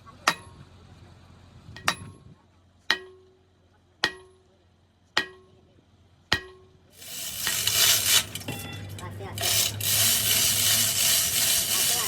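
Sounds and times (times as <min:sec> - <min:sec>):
hammer striking steel: 0:00.3 - 0:00.6, 0:01.8 - 0:02.2, 0:02.9 - 0:03.4, 0:04.0 - 0:04.5, 0:05.2 - 0:05.6, 0:06.3 - 0:09.8
loud rough rasping noise: 0:07.0 - 0:08.6, 0:09.3 - 0:12.0.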